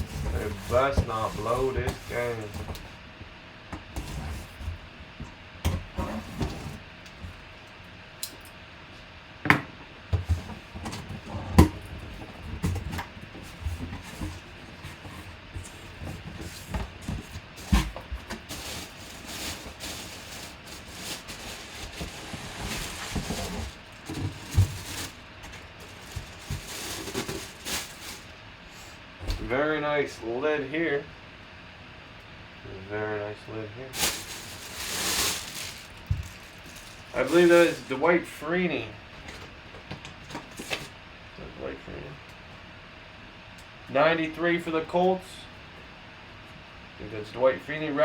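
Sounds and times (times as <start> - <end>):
packaging knocks scrapes and rustles: 0.0 - 3.0, 3.8 - 4.8, 5.7 - 7.4, 10.2 - 28.4, 34.0 - 38.0.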